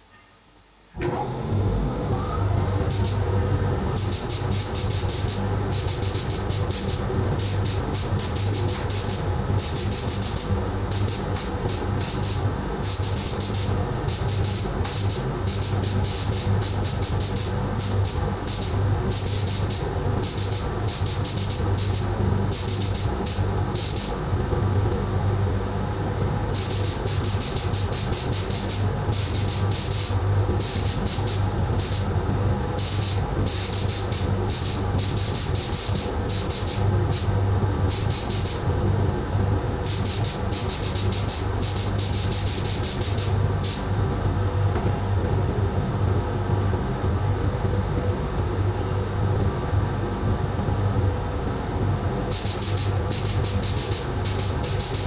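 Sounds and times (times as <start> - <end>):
sandblaster hissing: 26.6 - 32.1, 37.9 - 38.6, 52.3 - 55.0
low hum: 43.4 - 54.3.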